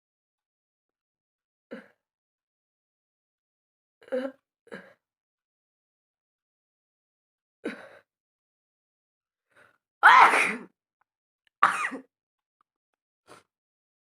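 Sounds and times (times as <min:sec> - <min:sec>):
woman coughing and sneezing: 0:10.0 - 0:10.7, 0:11.6 - 0:12.1.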